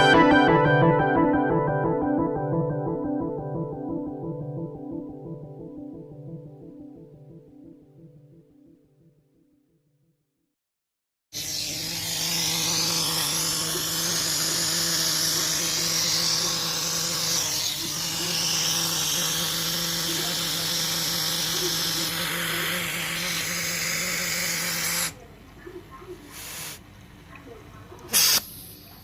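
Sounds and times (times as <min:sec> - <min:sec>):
compressor electric hum: 0:11.4 - 0:25.3
loud high air hiss: 0:28.1 - 0:29.0.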